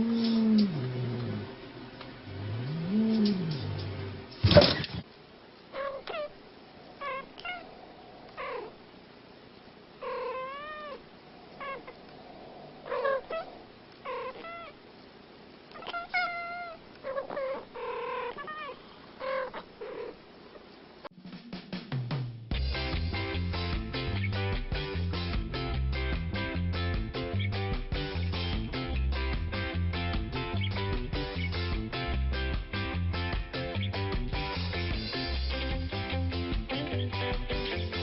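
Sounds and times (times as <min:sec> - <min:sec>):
cat meowing: 0:05.7 - 0:06.4, 0:07.0 - 0:07.7, 0:10.0 - 0:11.0, 0:12.9 - 0:14.8, 0:15.7 - 0:20.2.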